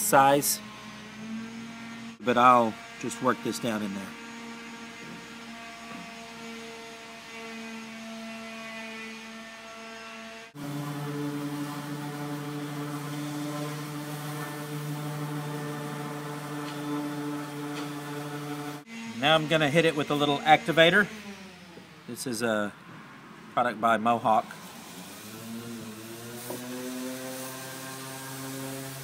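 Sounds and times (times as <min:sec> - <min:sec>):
machine hum: 0:10.6 - 0:22.1.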